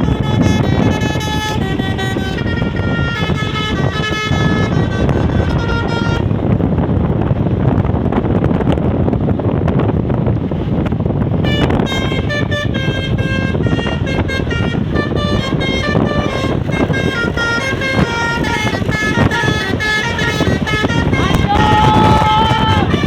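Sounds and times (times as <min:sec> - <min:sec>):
musical air horn tune: 0:00.0 - 0:06.4, 0:11.4 - 0:23.0
loud low rumble: 0:00.0 - 0:23.0.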